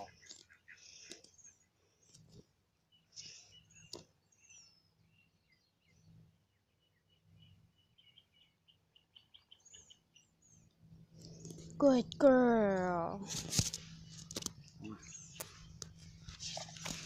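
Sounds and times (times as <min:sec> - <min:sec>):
faint bird chirps: 0:02.8 - 0:10.7.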